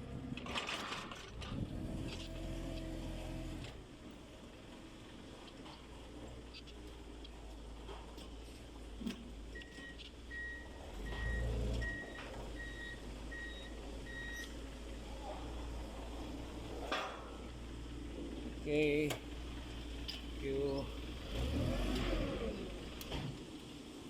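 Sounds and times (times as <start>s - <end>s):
rumble: 0.0s - 21.4s
short electronic beeps: 9.6s - 14.5s.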